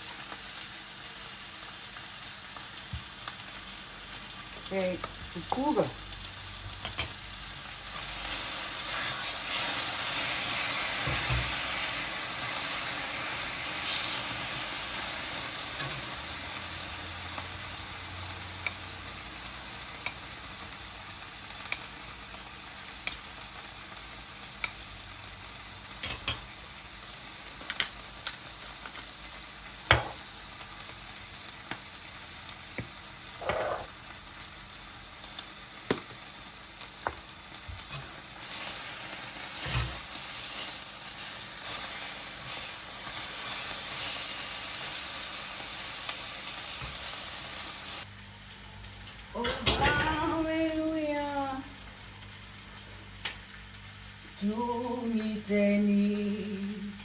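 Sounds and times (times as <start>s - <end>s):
food sizzling in a pan: 0.0s - 57.0s
utensil scraping a pan: 33.4s - 33.9s.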